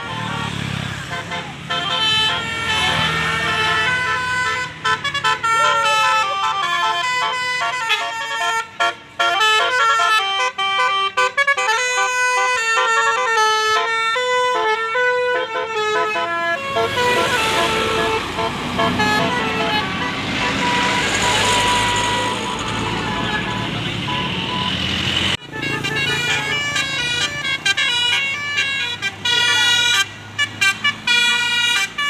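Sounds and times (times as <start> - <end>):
musical air horn melody: 1.1 - 24.7, 25.4 - 32.0.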